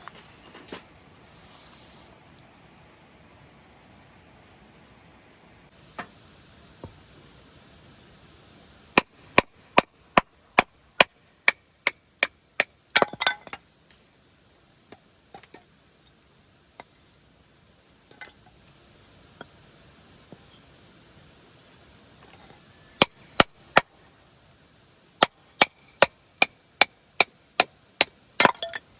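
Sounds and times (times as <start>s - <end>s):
wood pieces knocking: 12.9s - 13.6s, 28.4s - 28.9s.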